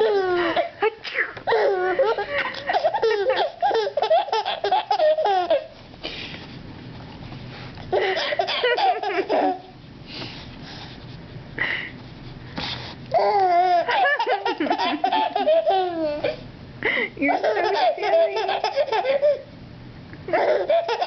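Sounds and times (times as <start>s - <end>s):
child laughing and squealing: 13.2s - 16.4s, 20.3s - 21.0s
breathy bursts: 16.2s - 17.2s.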